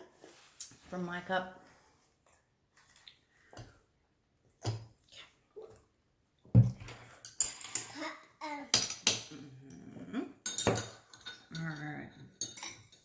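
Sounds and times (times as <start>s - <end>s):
utensils clinking against dishes: 7.2s - 8.0s, 8.7s - 9.4s, 10.4s - 13.0s.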